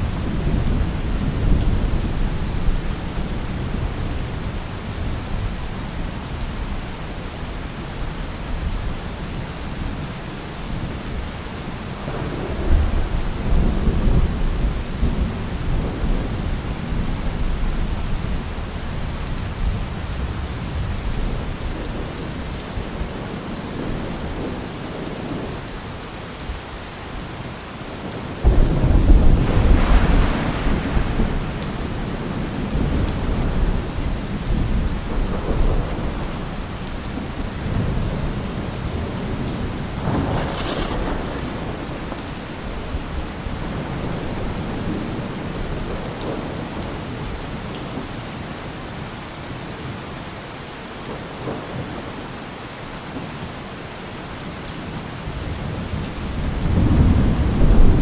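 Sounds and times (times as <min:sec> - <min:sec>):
heavy rain: 0:00.0 - 0:58.0
loud thunderclap: 0:28.4 - 0:36.5, 0:39.0 - 0:42.4, 0:56.4 - 0:58.0
rolling thunder: 0:28.4 - 0:47.0, 0:55.4 - 0:58.0.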